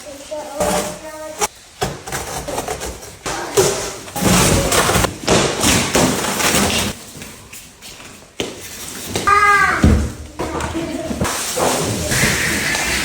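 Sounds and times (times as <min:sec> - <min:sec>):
scraping and rustling: 0:00.1 - 0:13.0
thumps and knocks of boxes: 0:01.8 - 0:07.0, 0:08.4 - 0:12.0.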